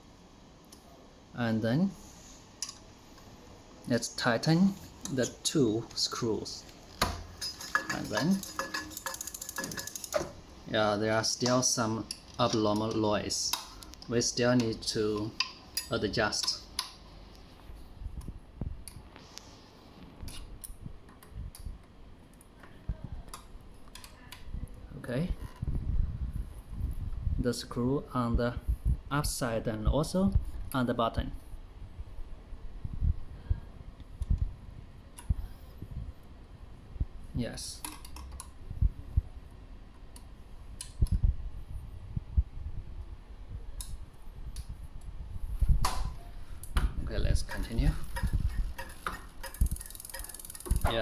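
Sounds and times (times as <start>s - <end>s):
metallic clicks and taps: 7.0s - 10.4s, 46.6s - 51.0s
tool knocks and clicks: 7.0s - 10.4s.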